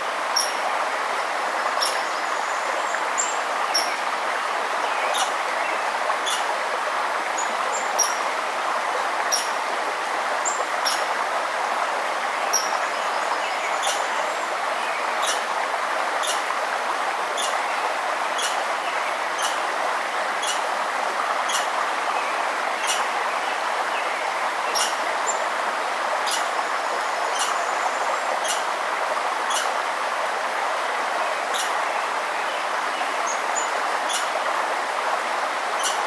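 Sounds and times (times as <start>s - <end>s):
river water flowing: 0.0s - 36.0s
small bird chirping: 13.8s - 14.0s, 17.4s - 17.6s, 18.4s - 18.6s.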